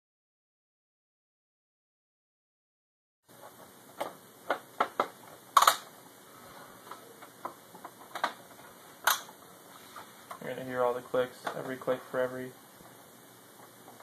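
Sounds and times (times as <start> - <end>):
plastic clips snapping: 4.0 - 5.9, 9.0 - 9.3.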